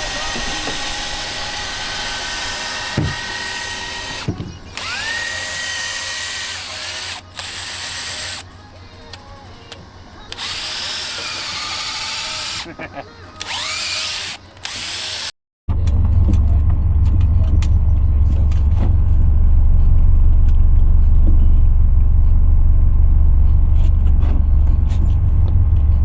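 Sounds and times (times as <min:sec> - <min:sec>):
boat motor rumbling: 0:00.0 - 0:05.5.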